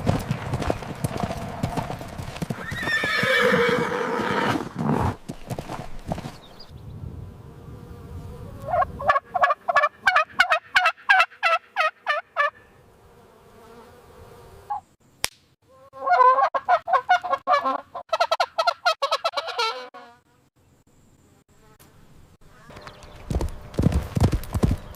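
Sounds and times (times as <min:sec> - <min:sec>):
fowl calling in rapid notes: 0:15.7 - 0:20.0.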